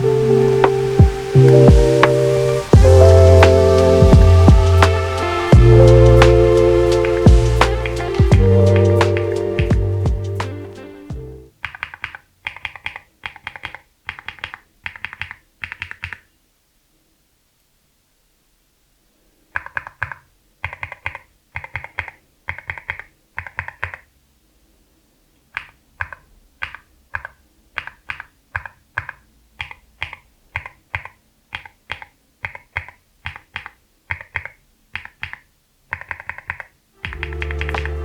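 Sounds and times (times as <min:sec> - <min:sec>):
music: 0:00.0 - 0:11.5, 0:37.0 - 0:38.0
mechanical keyboard typing: 0:11.6 - 0:16.3, 0:19.5 - 0:24.2, 0:25.5 - 0:38.0.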